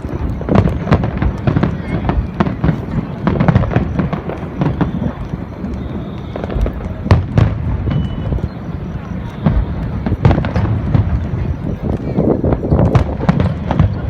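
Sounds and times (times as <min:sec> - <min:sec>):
fireworks bangs and crackling: 0:00.0 - 0:14.0.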